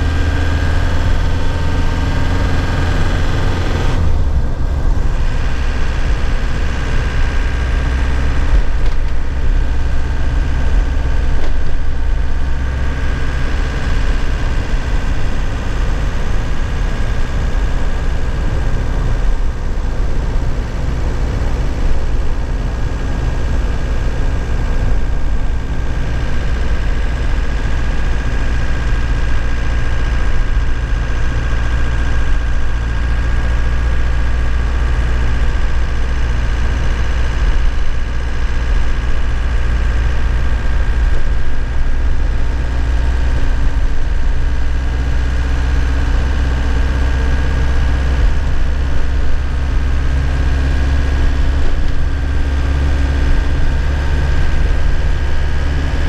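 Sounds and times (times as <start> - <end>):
road noise: 0.0 - 56.0
truck engine running: 0.0 - 56.0.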